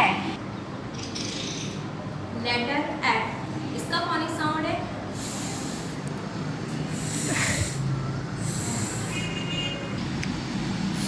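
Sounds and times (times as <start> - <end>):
woman making breathy hiss: 5.1 - 6.0, 6.9 - 9.3.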